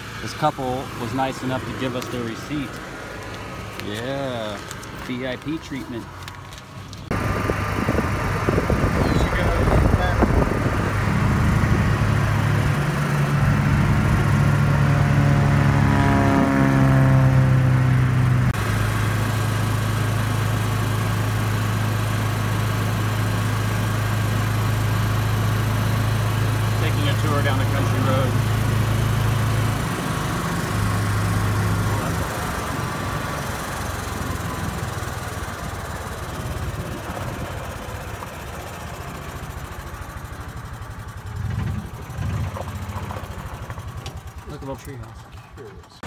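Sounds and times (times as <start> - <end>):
golf cart engine running: 0.0 - 46.0
road noise: 0.0 - 46.0
wind noise: 7.1 - 12.5.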